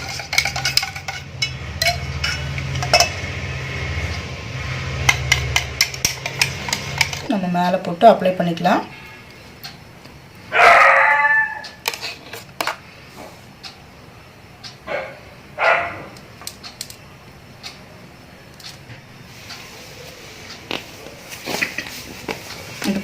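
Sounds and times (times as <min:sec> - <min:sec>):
dog barking: 0:10.5 - 0:11.6, 0:14.9 - 0:16.1.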